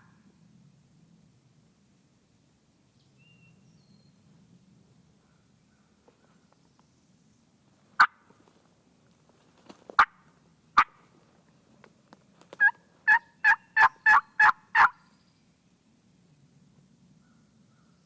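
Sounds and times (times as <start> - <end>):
turkey clucks: 12.6 - 15.0
turkey yelps: 12.6 - 15.0.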